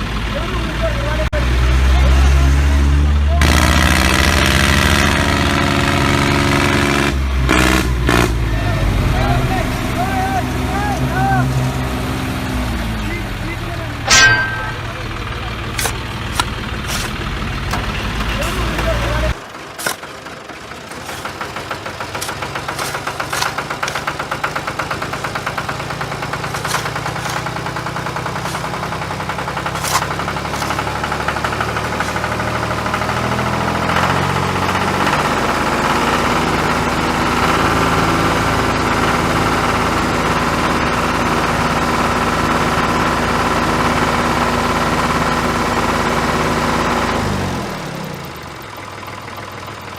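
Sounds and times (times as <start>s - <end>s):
engine running steadily: 3.1s - 49.9s
rattling clicks: 20.9s - 33.1s.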